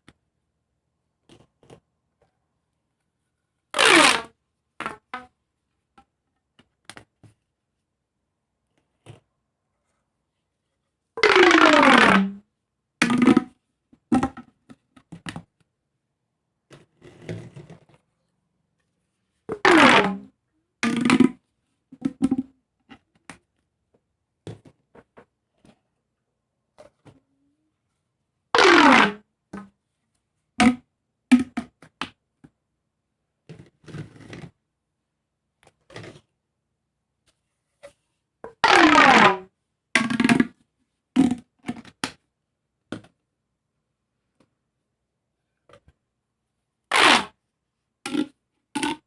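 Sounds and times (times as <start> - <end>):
plastic fidget toys popping: 40.0 - 40.6, 48.0 - 49.0.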